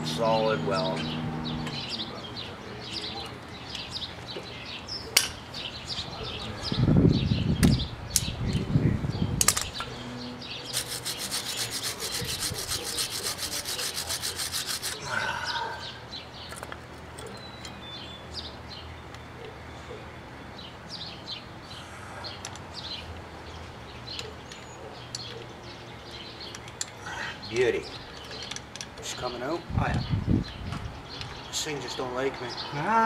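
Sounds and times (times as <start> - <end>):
birds chirping: 0.0 - 33.0.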